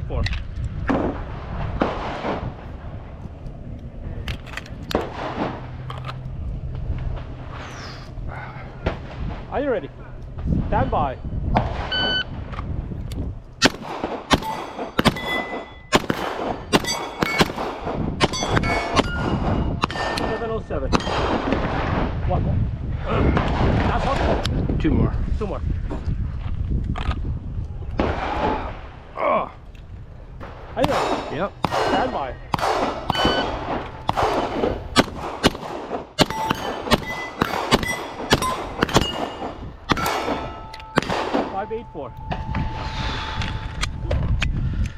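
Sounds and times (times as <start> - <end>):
steel plate clanging: 13.6 - 21.2, 30.8 - 35.2, 36.2 - 43.8
pistol shots: 13.6 - 22.0, 30.4 - 41.6.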